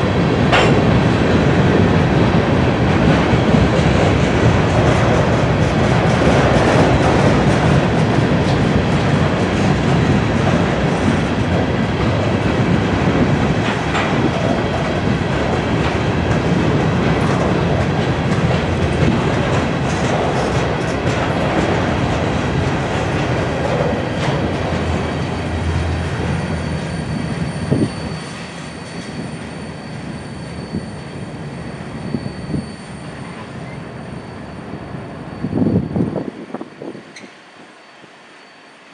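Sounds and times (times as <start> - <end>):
freight train wheels rumbling: 0.0 - 38.9
train wheel squeal: 23.5 - 38.9.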